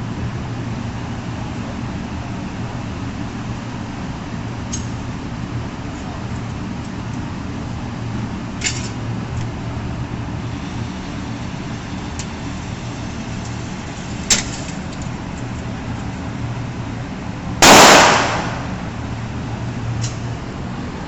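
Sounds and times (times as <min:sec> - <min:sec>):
steady low hum: 0:00.0 - 0:21.0
loud handgun shot: 0:17.6 - 0:18.9.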